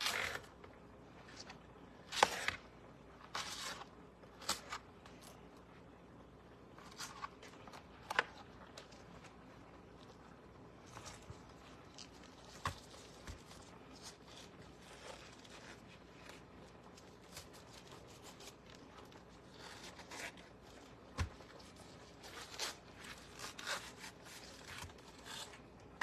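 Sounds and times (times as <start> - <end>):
knife cutting cabbage leaves: 0.0 - 0.5, 17.0 - 25.6.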